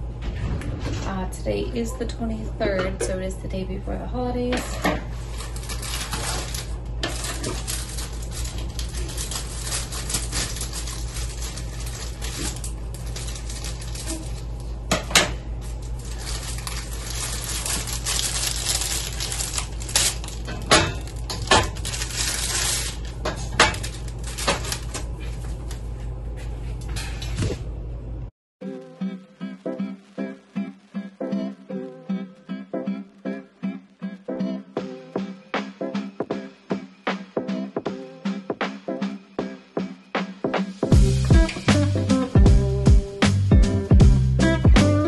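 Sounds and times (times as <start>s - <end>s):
low hum: 0.0s - 28.3s
dishes and utensils clinking: 2.6s - 3.2s.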